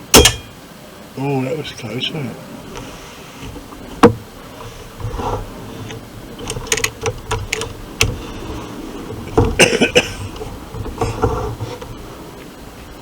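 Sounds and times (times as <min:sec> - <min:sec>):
rattles: 0:00.0 - 0:00.6, 0:03.5 - 0:12.2
air rifle mechanical clicks: 0:05.9 - 0:08.1.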